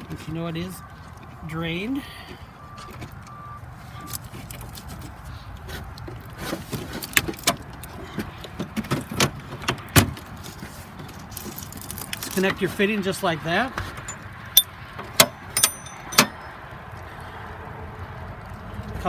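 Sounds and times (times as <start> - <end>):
wrench clicking on metal: 14.1 - 16.5.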